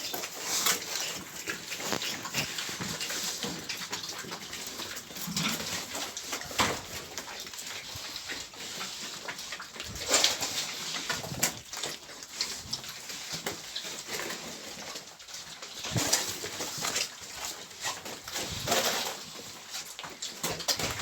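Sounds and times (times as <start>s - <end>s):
pigs grunting: 0.0s - 8.6s.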